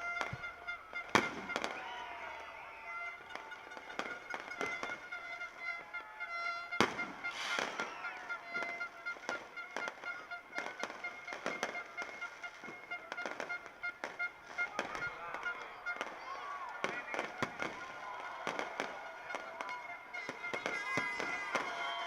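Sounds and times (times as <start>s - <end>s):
fireworks bangs and crackles: 0.0s - 22.0s
horn-like tones: 0.0s - 22.0s
short sliding whistles: 7.2s - 8.2s.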